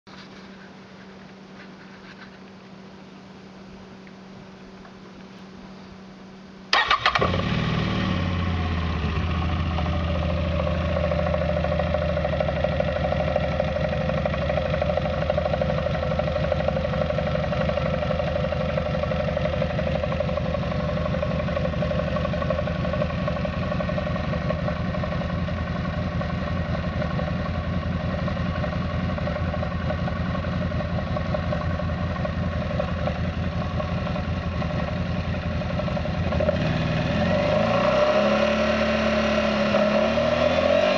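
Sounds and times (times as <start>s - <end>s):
atv engine starting and idling: 6.7s - 40.9s.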